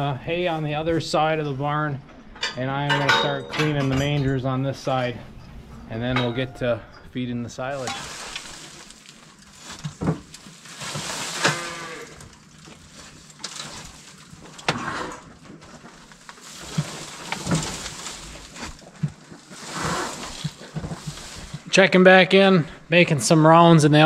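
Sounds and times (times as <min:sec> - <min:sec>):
knocks and clanks: 0:02.0 - 0:04.5
cows mooing: 0:11.2 - 0:12.4.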